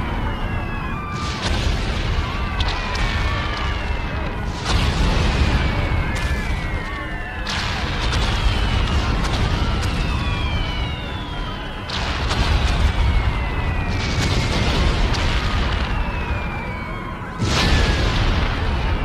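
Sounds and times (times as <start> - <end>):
explosion blasts: 0.0 - 19.0
low rumble of explosions: 0.0 - 19.0.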